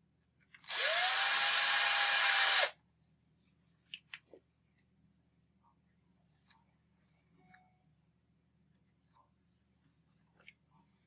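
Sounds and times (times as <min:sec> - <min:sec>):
power drill driving a screw: 0:00.6 - 0:02.8.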